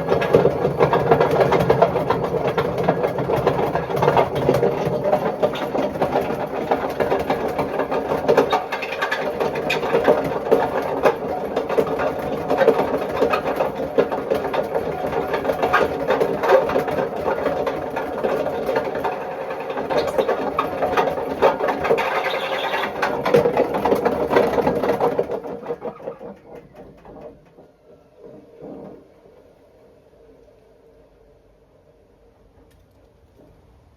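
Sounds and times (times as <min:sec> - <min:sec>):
washing machine drum rattling: 0:00.0 - 0:29.0.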